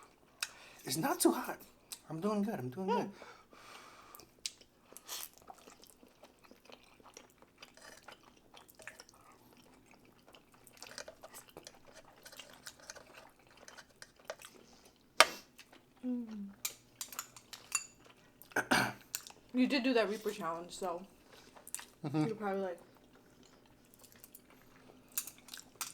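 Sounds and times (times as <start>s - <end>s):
wet chewing: 4.2s - 19.5s, 21.2s - 25.9s
utensil clinking on dish: 16.6s - 18.0s.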